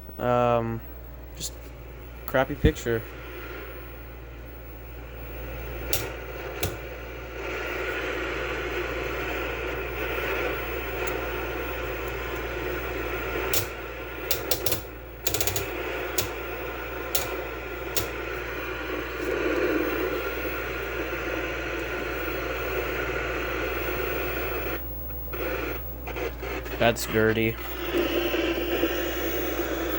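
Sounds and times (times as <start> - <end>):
television hum and hiss: 0.0 - 29.9
sharp mechanical clicks: 5.9 - 6.8, 13.5 - 16.4, 17.1 - 18.2.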